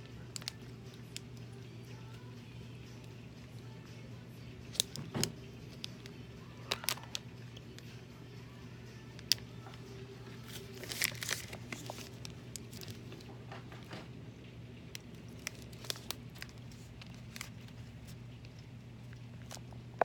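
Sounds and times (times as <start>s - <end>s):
plastic wrapper crinkling and tearing: 0.0s - 1.4s, 4.7s - 5.0s, 5.7s - 7.3s, 9.2s - 13.3s, 14.9s - 19.8s.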